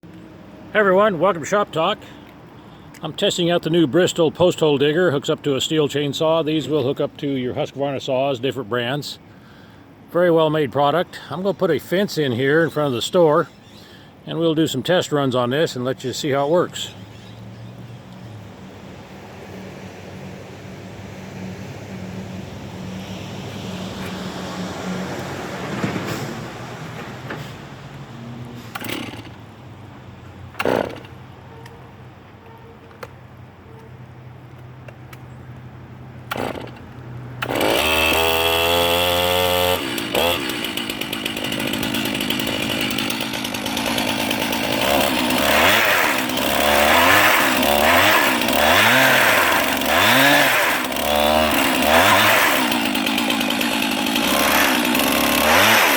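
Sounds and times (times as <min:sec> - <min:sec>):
chainsaw engine driving auger: 0:28.3 - 0:29.4, 0:30.6 - 0:31.2, 0:36.2 - 0:55.9.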